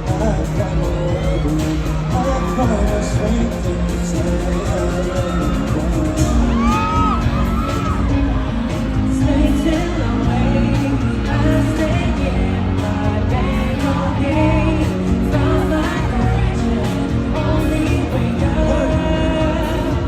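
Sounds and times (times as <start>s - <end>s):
boy band singing pop music: 0.0s - 20.0s.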